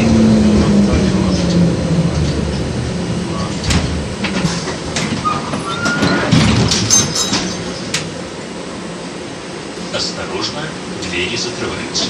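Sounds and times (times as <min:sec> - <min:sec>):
tram rumbling on rails: 0:00.0 - 0:12.0
wheel squeal: 0:05.2 - 0:06.4.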